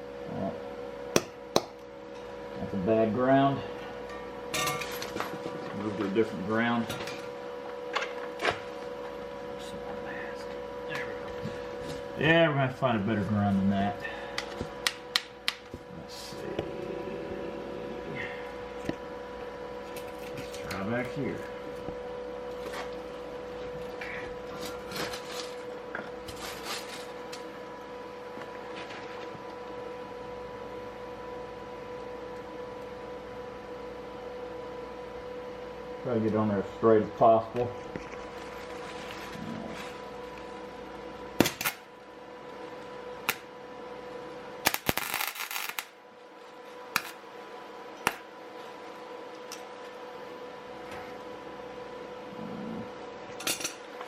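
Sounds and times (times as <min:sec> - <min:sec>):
steady electrical hum: 0:00.0 - 0:54.0
welder arc snapping and crackling: 0:14.3 - 0:15.8, 0:41.4 - 0:42.0, 0:43.2 - 0:43.6, 0:44.6 - 0:46.0, 0:46.7 - 0:47.2.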